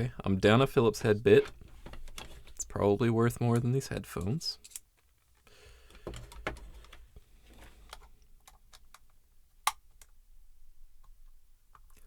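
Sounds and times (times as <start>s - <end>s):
plastic parts being handled: 1.2s - 10.2s.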